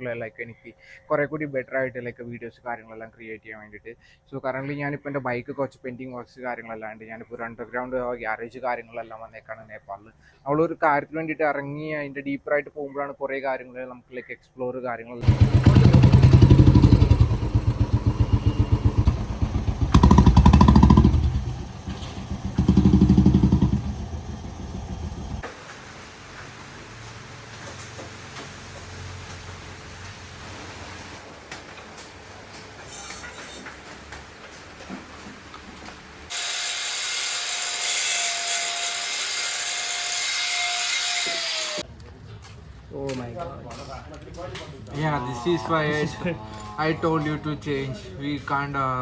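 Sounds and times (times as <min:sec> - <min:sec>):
motorcycle engine revving and idling: 0:15.2 - 0:25.4
power tool whining: 0:36.3 - 0:41.8.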